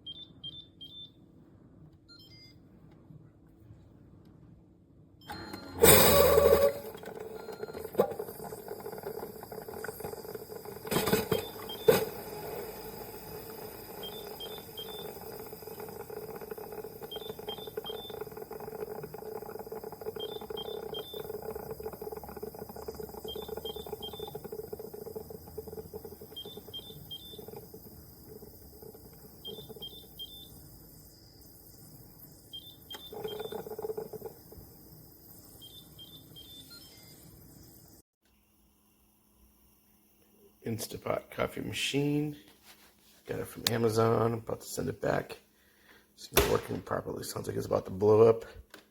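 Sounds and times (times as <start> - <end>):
coffee maker pump humming: 5.3 - 42.2
coffee maker spurt: 5.8 - 36.6
triple beep: 11.3 - 12.9, 13.8 - 15.4, 17.0 - 18.3, 20.2 - 21.4, 23.2 - 24.4.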